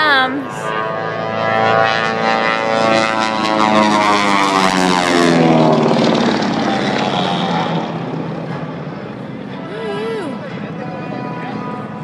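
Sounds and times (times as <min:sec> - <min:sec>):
propeller airplane flying past: 0:00.0 - 0:12.0.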